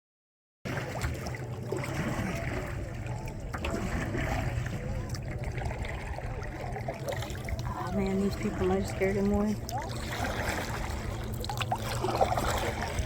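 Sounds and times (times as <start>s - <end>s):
steady low rumble: 0.7s - 13.0s
water sloshing and trickling: 0.7s - 13.0s.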